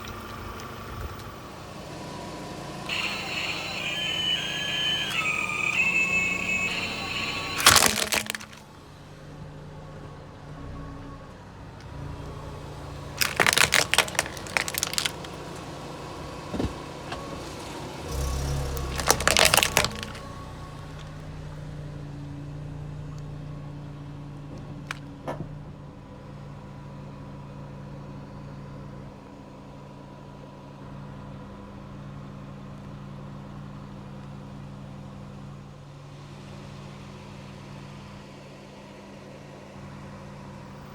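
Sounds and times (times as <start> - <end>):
car engine running slowly: 0.0 - 7.6, 8.5 - 40.9
tyres crunching brittle objects: 2.9 - 8.6, 13.2 - 15.7, 18.2 - 20.3.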